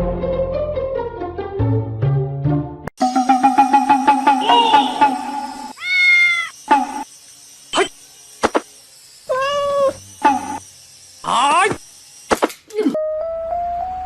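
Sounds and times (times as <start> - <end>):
cat meowing: 5.8 - 6.6, 9.3 - 10.0.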